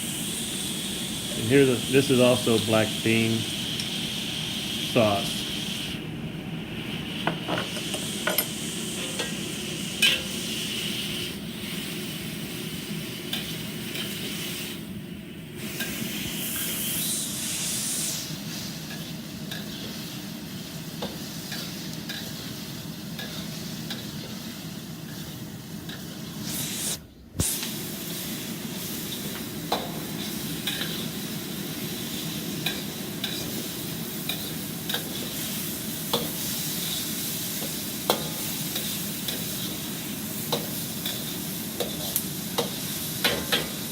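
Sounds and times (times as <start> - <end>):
food sizzling in a wok: 0.0 - 43.9
spatula scraping a wok: 18.2 - 26.4, 31.8 - 43.8.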